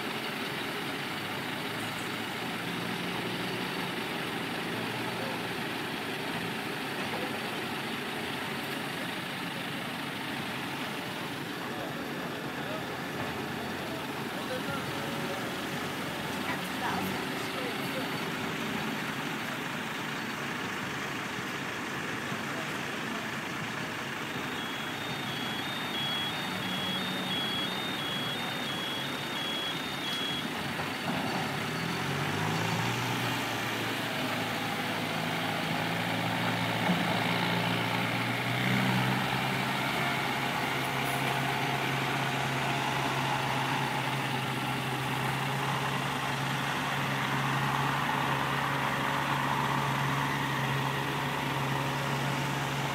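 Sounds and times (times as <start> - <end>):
heavy vehicle engine: 0.0 - 52.9
two-tone reversing alarm beeps: 24.5 - 30.6.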